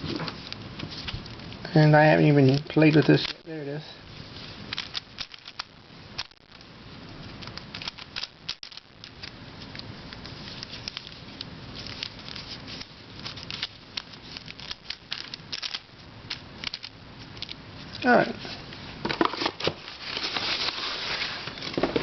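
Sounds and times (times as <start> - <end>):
plastic puzzle clicking and rattling: 2.4 - 3.4, 4.7 - 6.6, 7.2 - 17.6.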